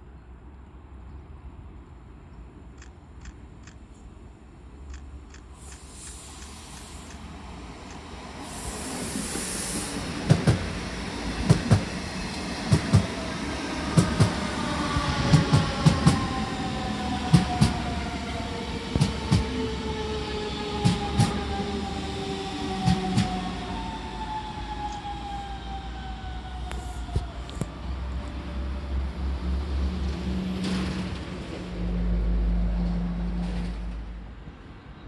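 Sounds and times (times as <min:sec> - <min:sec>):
train wheels clicking over rail joints: 0:04.9 - 0:16.4, 0:17.2 - 0:18.0, 0:18.9 - 0:19.6, 0:20.8 - 0:21.5, 0:22.8 - 0:23.5
electric train whine: 0:05.6 - 0:32.5.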